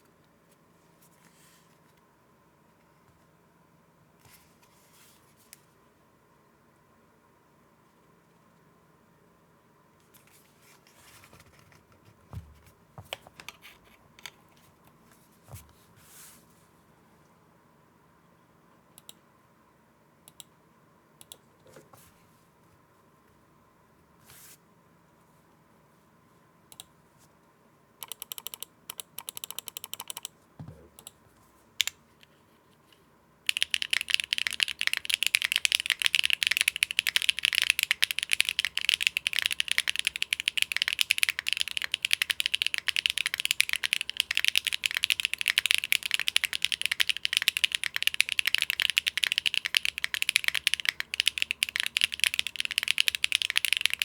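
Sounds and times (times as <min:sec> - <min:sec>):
mechanical keyboard typing: 0:28.0 - 0:30.3, 0:33.5 - 0:54.0.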